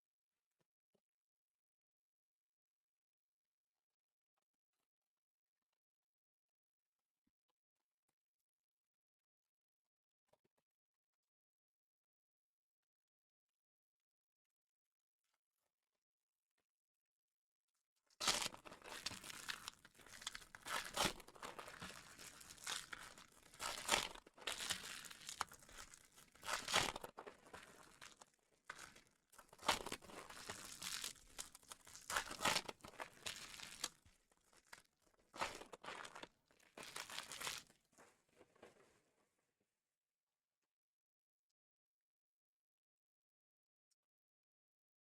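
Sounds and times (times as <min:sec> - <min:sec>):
card pack wrappers tearing and crinkling: 0:18.2 - 0:34.8, 0:35.4 - 0:37.7.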